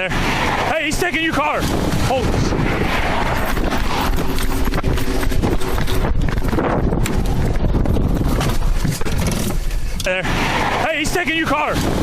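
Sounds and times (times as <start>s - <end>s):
wind buffeting microphone: 0.0s - 10.9s, 11.7s - 12.0s
running footfalls: 3.4s - 9.6s.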